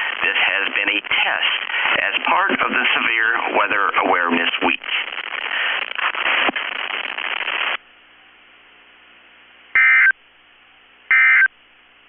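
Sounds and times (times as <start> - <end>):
radio static hiss: 0.0 - 11.6
warbling data bursts: 9.8 - 10.1.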